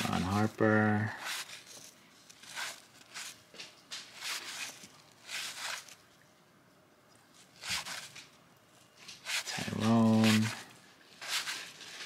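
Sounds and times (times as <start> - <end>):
cards swishing: 1.0 - 6.0, 7.4 - 8.4, 9.0 - 12.0.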